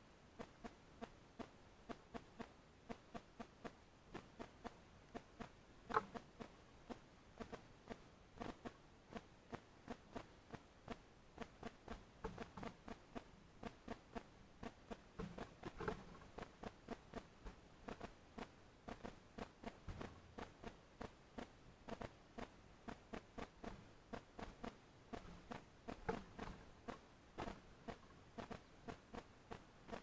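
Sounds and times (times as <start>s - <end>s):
birds pecking at seed: 0.4s - 30.0s.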